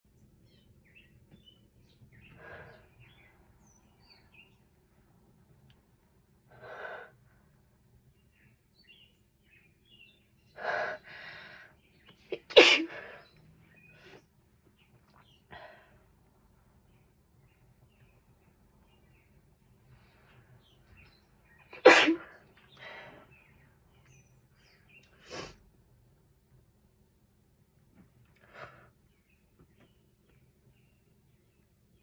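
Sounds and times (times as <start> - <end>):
faint bird chirps: 0.1 - 4.8
person sneezing: 12.3 - 13.0, 21.8 - 22.3.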